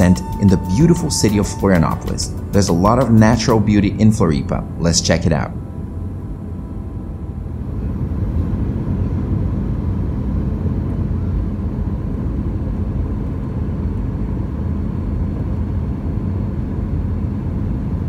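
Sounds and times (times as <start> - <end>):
faint steady tone: 0.0 - 12.0
low rumble of engines and airflow: 0.0 - 18.0.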